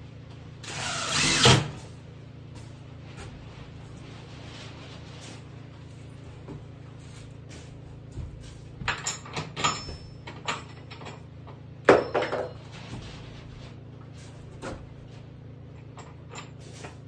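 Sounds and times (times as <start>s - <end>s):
steady low hum: 0.0s - 17.0s
objects clattering and knocking: 7.5s - 13.8s.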